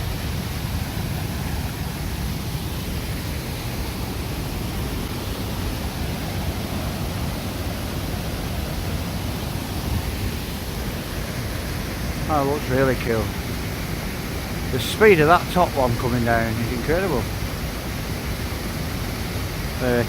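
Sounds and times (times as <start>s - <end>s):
waterfall rushing over rocks: 0.0s - 20.0s.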